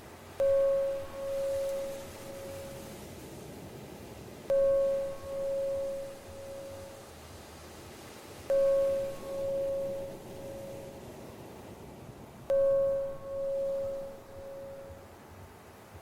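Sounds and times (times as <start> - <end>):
faint sea hiss: 0.0 - 15.2
bell-like chime: 0.4 - 2.9, 4.5 - 7.1, 8.5 - 11.0, 12.5 - 15.0.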